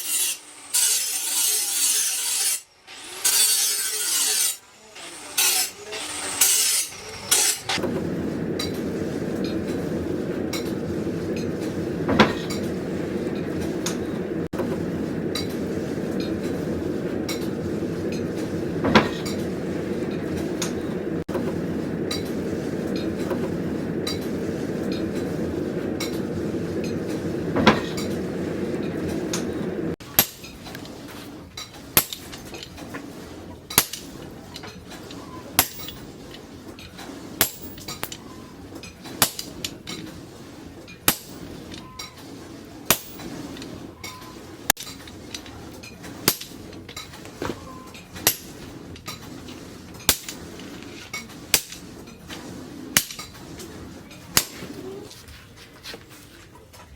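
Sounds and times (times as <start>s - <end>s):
steady rushing noise: 7.2s - 30.1s.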